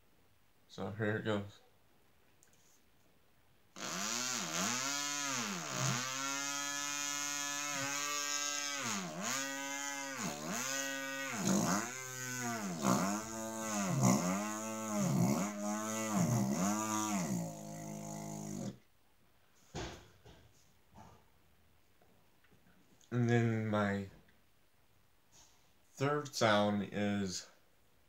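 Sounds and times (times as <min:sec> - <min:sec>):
person imitating a chainsaw: 0:03.8 - 0:18.8.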